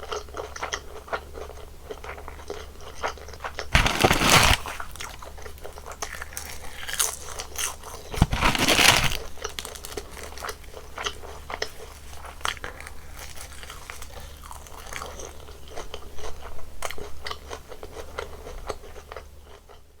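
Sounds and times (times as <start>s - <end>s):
loud crunchy bite: 3.6s - 5.3s, 6.0s - 10.5s.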